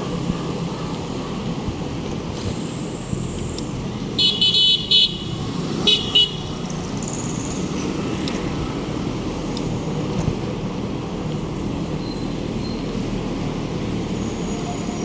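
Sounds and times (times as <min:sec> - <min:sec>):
road traffic: 0:00.0 - 0:15.0
horn beeping: 0:04.2 - 0:06.5.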